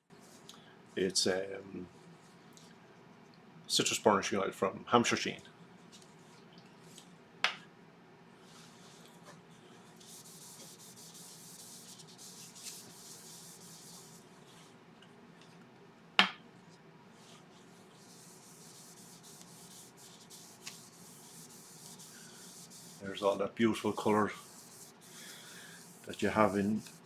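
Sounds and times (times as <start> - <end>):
paper towel rubbing wood bowl: 9.9 - 14.7, 17.1 - 27.0.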